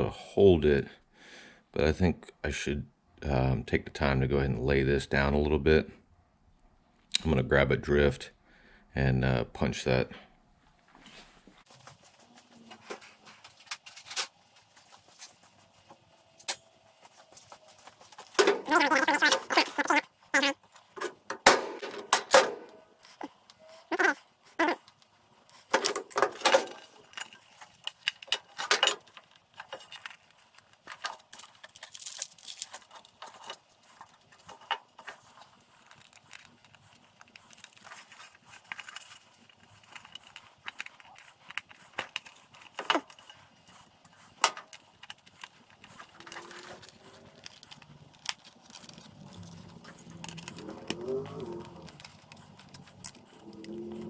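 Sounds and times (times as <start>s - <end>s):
metal tools clinking: 18.2s - 23.8s, 25.6s - 41.2s, 41.8s - 54.0s.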